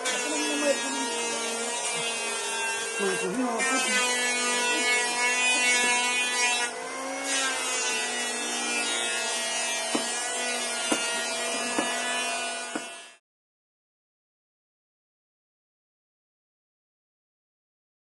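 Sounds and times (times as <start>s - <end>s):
electric power tool motor whining: 0.0s - 13.2s.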